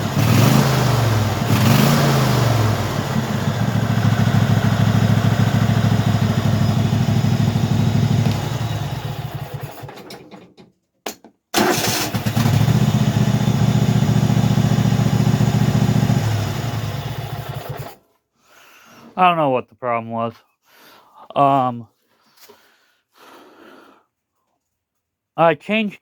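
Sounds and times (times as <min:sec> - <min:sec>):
lawn tractor engine running: 0:00.0 - 0:10.5, 0:11.6 - 0:18.0.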